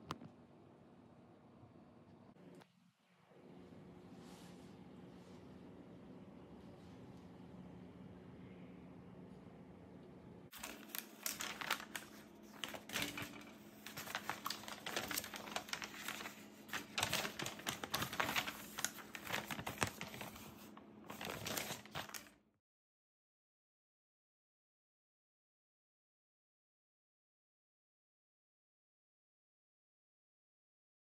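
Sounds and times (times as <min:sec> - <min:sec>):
plastic bags crinkling: 0:10.5 - 0:22.4.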